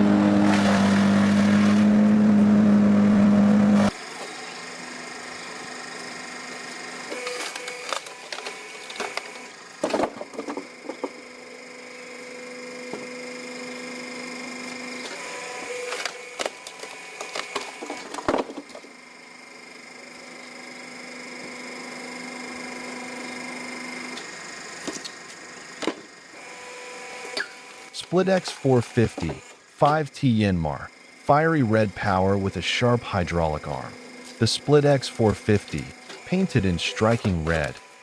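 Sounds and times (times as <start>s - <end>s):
hydraulic machine whining: 0.0s - 4.5s, 22.4s - 30.1s, 30.7s - 38.0s.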